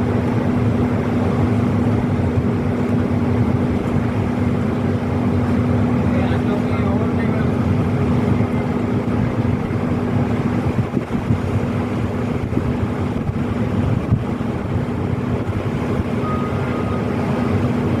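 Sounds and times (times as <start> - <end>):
ship machinery humming: 0.0 - 18.0
wind buffeting microphone: 0.0 - 18.0.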